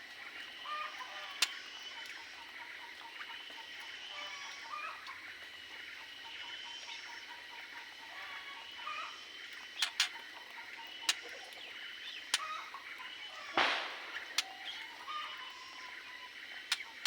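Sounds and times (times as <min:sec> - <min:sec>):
birds chirping and calling: 0:06.2 - 0:17.0.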